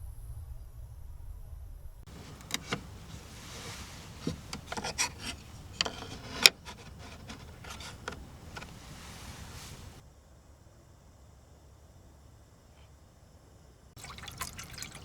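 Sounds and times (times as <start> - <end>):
objects rubbing and scraping: 2.1 - 10.0.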